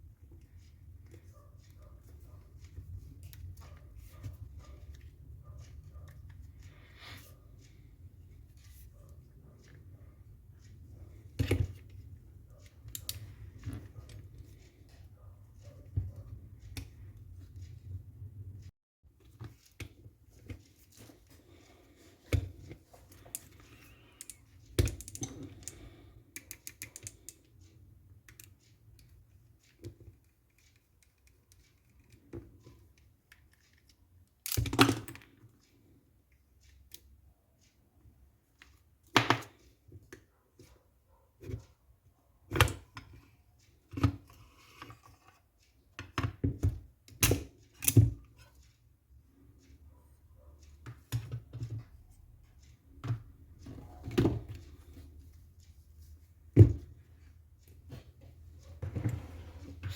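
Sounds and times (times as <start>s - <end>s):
clicks and knocks of parts: 19.2s - 27.5s, 28.2s - 35.8s, 42.5s - 48.8s.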